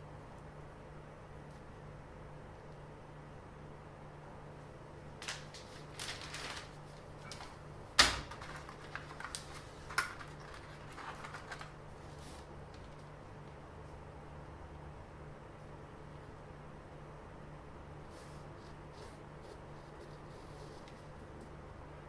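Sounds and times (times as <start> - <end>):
faint steady hum: 0.0 - 22.0
objects clicking and rustling: 5.2 - 11.8.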